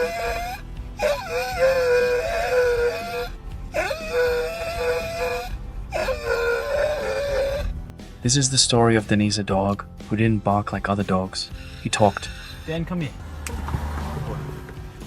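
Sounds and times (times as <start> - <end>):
dog howling: 0.0 - 7.9.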